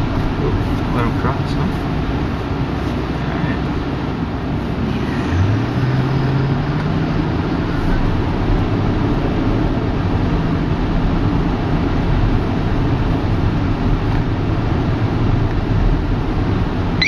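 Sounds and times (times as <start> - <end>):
car engine accelerating: 0.0 - 17.0
road noise inside car: 0.0 - 17.0.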